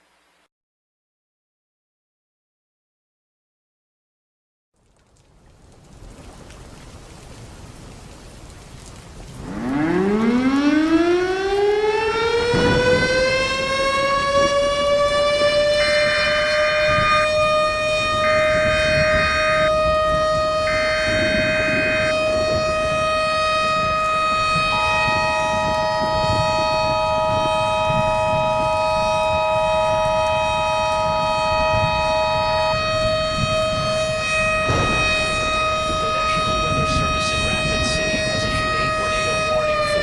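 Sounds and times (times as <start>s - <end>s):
civil defense siren wailing: 8.8s - 40.0s.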